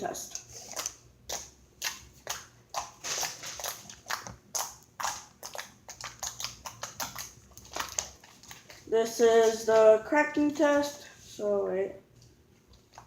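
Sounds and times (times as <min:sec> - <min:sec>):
slime squishing and popping: 0:00.4 - 0:08.8.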